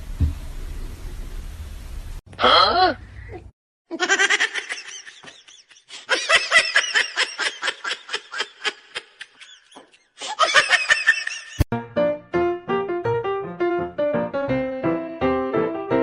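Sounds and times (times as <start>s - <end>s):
person laughing hard: 3.9s - 11.6s.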